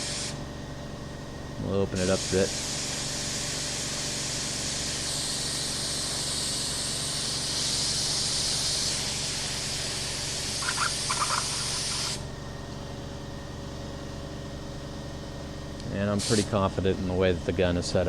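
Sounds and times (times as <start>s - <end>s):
spray gun hissing: 2.0s - 12.2s, 16.2s - 16.5s.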